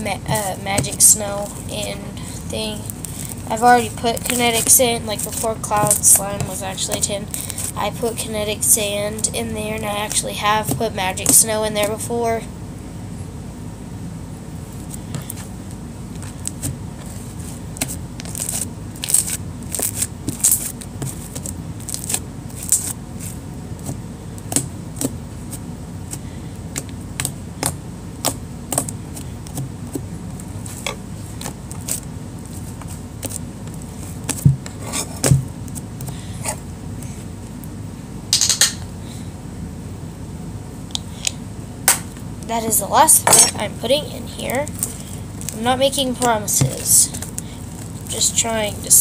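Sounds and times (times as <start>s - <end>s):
slime mixed in plastic container: 0.0s - 9.0s, 26.7s - 36.1s, 43.8s - 49.0s.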